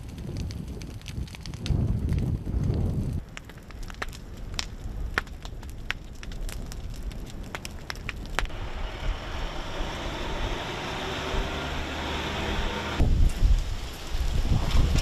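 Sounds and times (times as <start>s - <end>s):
fire crackling and popping: 0.0s - 15.0s
low rumble: 0.4s - 15.0s
steady rushing noise: 8.4s - 15.0s.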